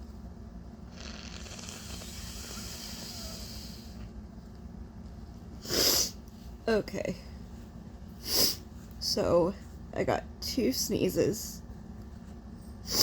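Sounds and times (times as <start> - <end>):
woman breathing in hissing: 0.9 - 4.0.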